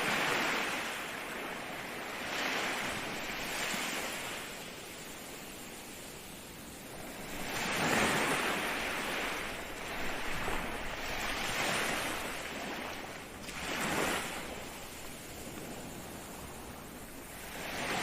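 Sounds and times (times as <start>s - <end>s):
ocean waves breaking: 0.0s - 18.0s.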